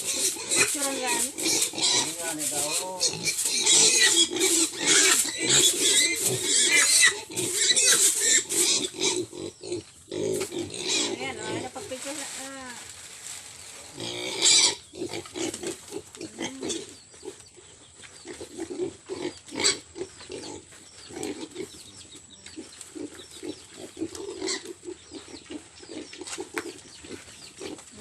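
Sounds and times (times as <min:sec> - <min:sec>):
pig squealing: 0:00.0 - 0:11.7, 0:14.0 - 0:16.9, 0:18.4 - 0:20.6
pigs grunting: 0:00.0 - 0:11.7, 0:14.0 - 0:28.0.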